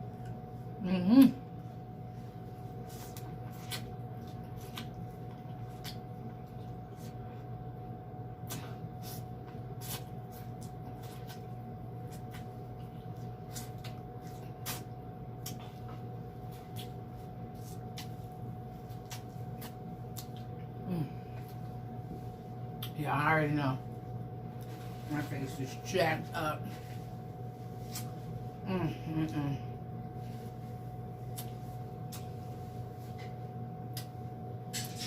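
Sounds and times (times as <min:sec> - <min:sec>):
steady low hum: 0:00.0 - 0:35.0
chewing and lip smacks: 0:02.9 - 0:07.2, 0:09.4 - 0:20.8, 0:31.2 - 0:32.5, 0:33.9 - 0:35.0.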